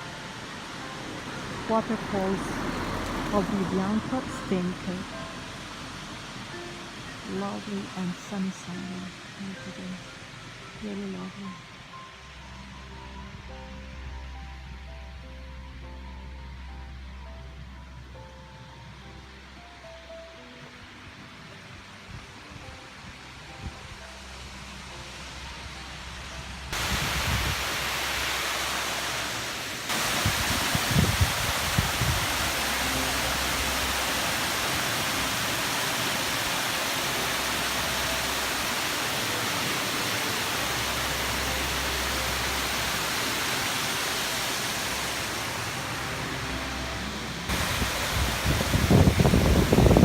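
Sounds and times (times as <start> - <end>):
waterfall roaring: 0.0 - 9.8, 24.5 - 50.0.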